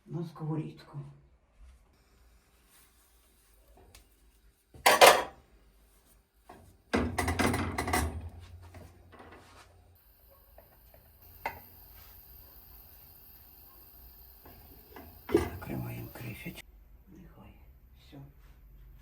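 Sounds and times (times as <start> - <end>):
cookware clattering: 4.8 - 5.4, 7.0 - 8.3.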